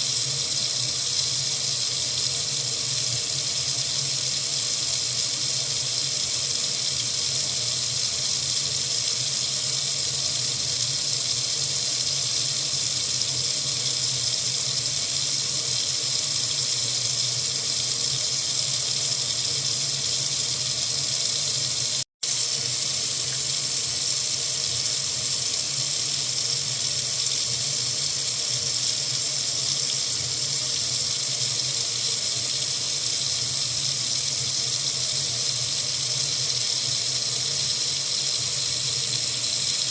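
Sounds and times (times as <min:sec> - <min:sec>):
water running from faucet: 0:00.0 - 0:39.9.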